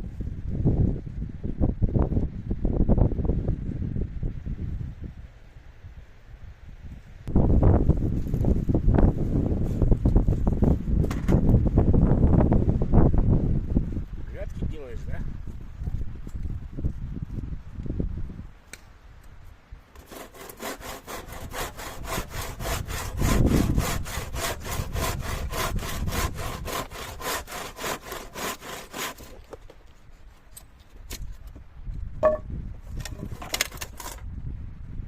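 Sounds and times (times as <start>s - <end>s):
wind rumble on microphone: 0.0s - 19.9s, 21.2s - 27.6s, 30.8s - 35.0s
hand saw cutting wood: 20.0s - 30.5s, 33.0s - 34.2s.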